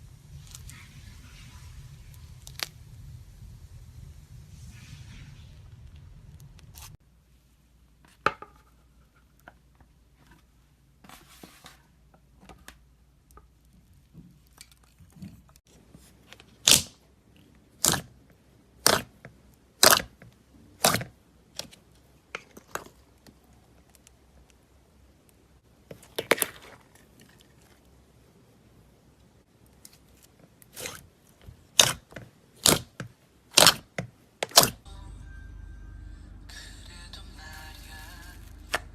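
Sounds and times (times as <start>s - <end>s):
slime clicking and crackling: 2.2s - 2.8s, 16.6s - 16.9s, 17.8s - 18.2s, 18.8s - 19.2s, 19.8s - 20.2s, 31.6s - 34.8s.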